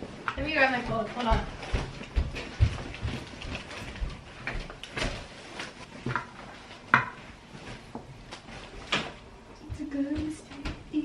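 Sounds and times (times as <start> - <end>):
household objects knocking and clattering: 6.0 - 7.3.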